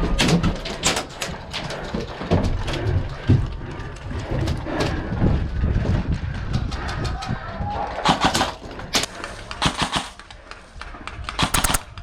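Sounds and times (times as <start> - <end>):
airsoft gun shots: 11.4 - 12.0.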